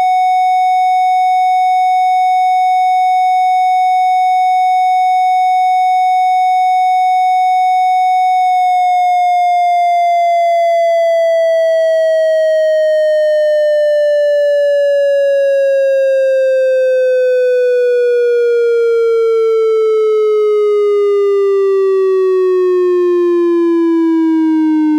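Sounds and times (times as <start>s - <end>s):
synthesized siren tone: 6.6s - 24.9s.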